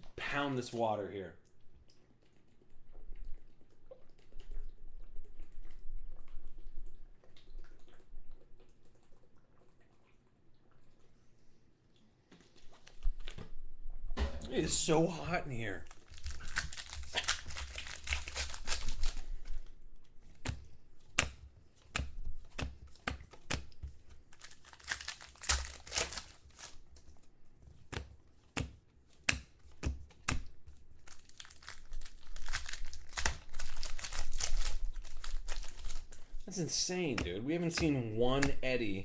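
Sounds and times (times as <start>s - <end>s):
cards crackling: 14.6s - 19.5s, 20.4s - 26.8s, 29.3s - 39.0s
wrappers tearing and crinkling: 15.6s - 19.6s, 24.3s - 26.8s, 31.0s - 36.5s.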